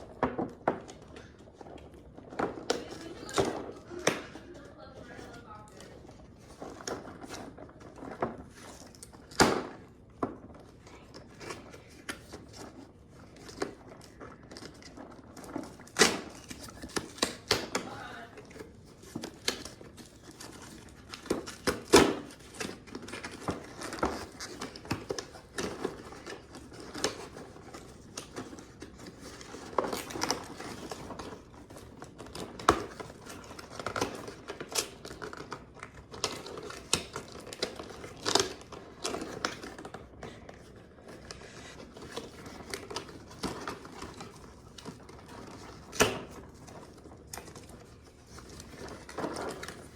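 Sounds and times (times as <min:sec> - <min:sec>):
packaging crinkling and tearing: 0:00.8 - 0:49.9.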